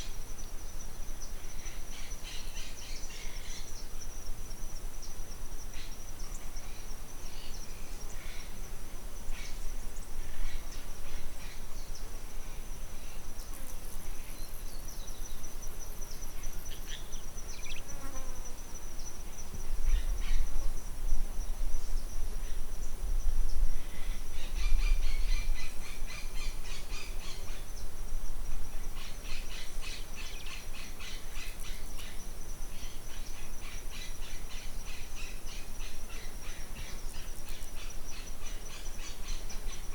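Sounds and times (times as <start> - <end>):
high-pitched insect chorus: 0.0 - 39.9
bird chirps: 16.2 - 17.9
wind rumbling on microphone: 18.8 - 33.0.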